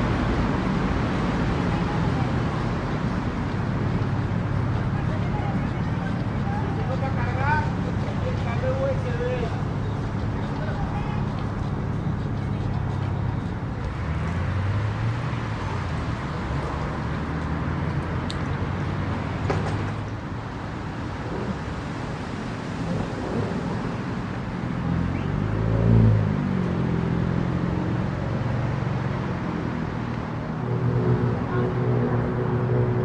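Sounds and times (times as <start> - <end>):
engines idling: 0.0 - 20.5
engine revving: 24.8 - 28.8.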